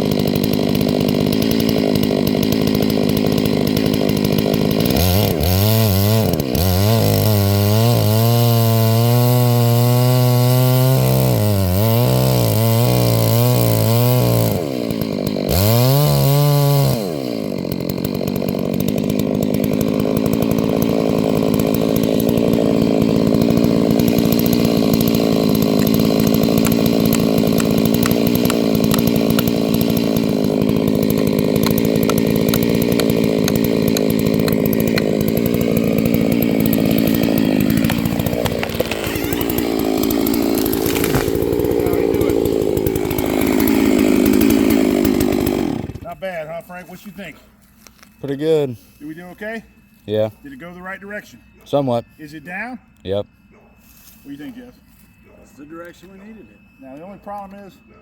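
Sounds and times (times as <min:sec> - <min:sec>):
chainsaw revving while cutting: 0:00.0 - 0:46.2.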